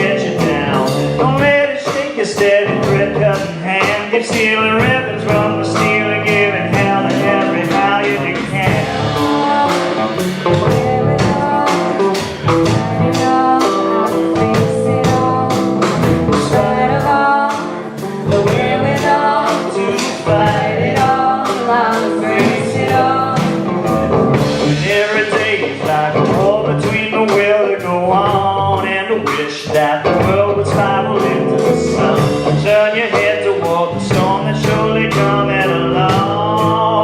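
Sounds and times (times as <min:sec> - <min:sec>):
guitar strumming: 0:04.4 - 0:29.0
held melody notes: 0:04.7 - 0:27.1.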